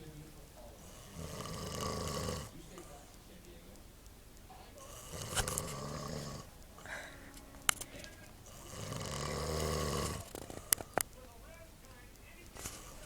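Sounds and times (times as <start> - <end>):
sharp clicks: 0.0 - 13.0
man snoring: 0.7 - 3.1, 4.7 - 11.0.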